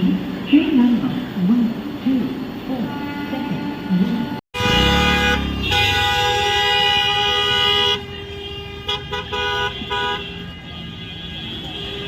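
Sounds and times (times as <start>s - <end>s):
horn blasts and toots: 2.9s - 12.0s.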